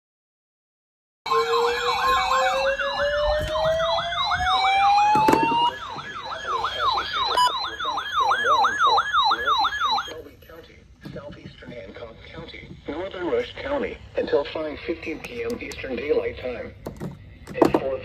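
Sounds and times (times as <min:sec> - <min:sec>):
electronic siren yelp: 0:01.3 - 0:10.1
siren wail: 0:01.3 - 0:10.1.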